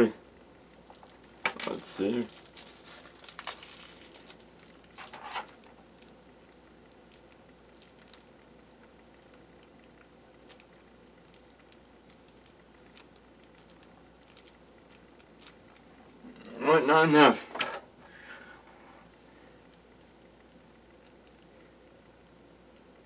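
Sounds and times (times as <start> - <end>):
plastic bag crinkling: 0.7 - 8.9, 9.6 - 16.2.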